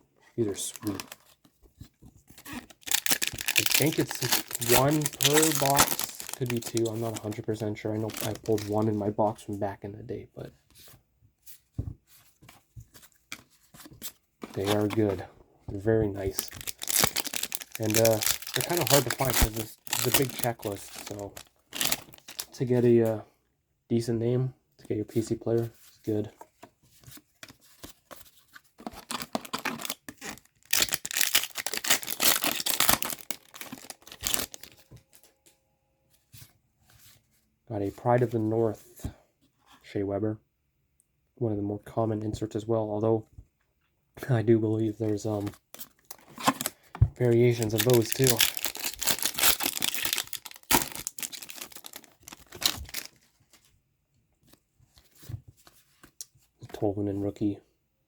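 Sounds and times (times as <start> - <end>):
soft handling sounds: 0.0 - 23.3, 24.8 - 40.0, 43.2 - 57.5
wrapper crinkling and tearing: 0.5 - 1.2, 2.5 - 8.9, 16.2 - 22.6, 29.0 - 34.8, 45.8 - 53.2.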